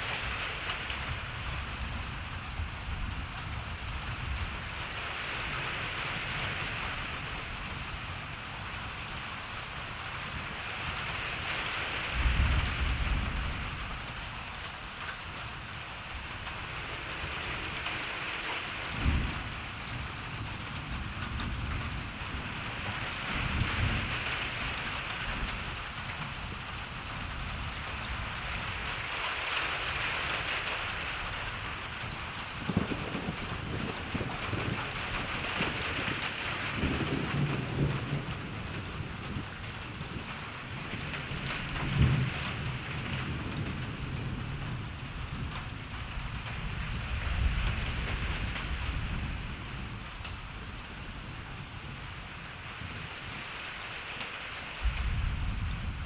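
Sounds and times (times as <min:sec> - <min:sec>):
rain hiss: 0:00.0 - 0:56.0
thunder rolling: 0:16.1 - 0:29.2, 0:29.9 - 0:51.3, 0:54.8 - 0:56.0.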